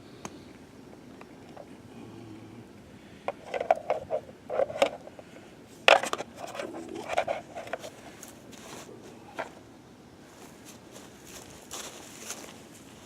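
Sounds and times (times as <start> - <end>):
handling rustles and scrapes: 5.8 - 9.6, 10.3 - 13.0.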